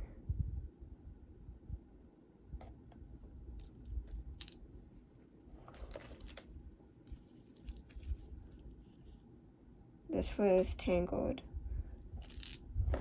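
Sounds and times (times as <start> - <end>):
jewelry clicking and rattling: 3.6 - 4.6, 5.3 - 9.2, 11.9 - 13.0.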